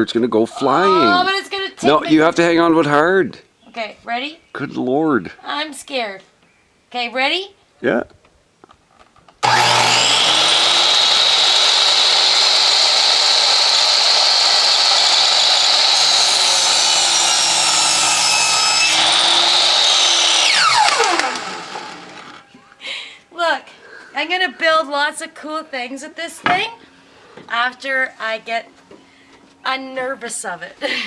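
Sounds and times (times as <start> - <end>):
saw blade spinning down: 9.4 - 22.4
miter saw cutting wood: 9.4 - 22.5.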